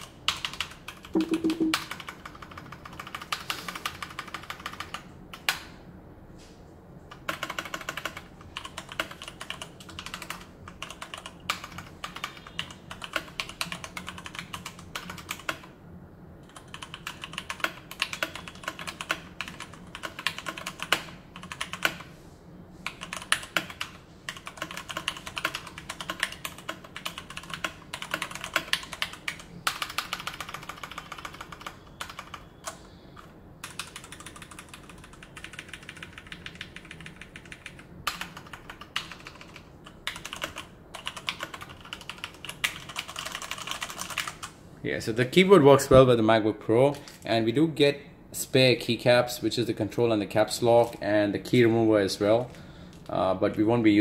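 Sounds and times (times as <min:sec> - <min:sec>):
mechanical keyboard typing: 0:00.0 - 0:05.6, 0:07.1 - 0:15.7, 0:16.4 - 0:22.1, 0:22.8 - 0:32.8, 0:33.6 - 0:44.5.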